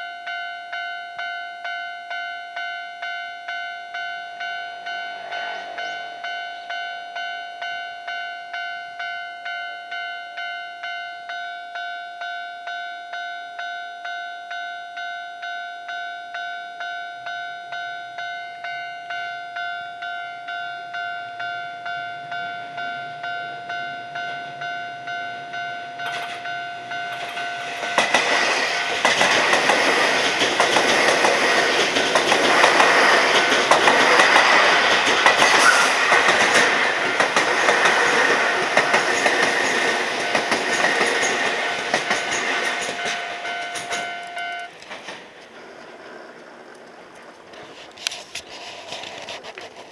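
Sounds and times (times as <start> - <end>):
level-crossing warning bell ringing: 0.0 - 47.4
electric train rumbling with wheel clatter: 4.3 - 6.9, 21.8 - 49.9.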